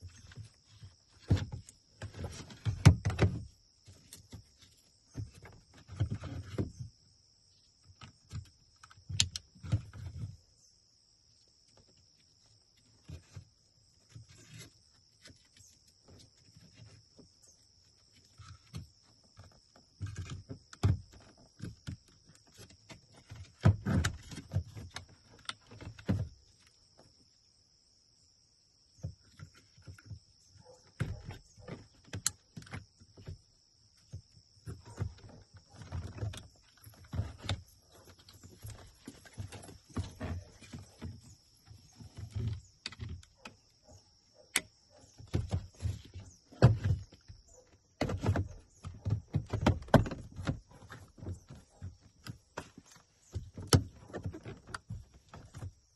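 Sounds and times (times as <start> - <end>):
plastic parts clicking and knocking: 7.8 - 10.2.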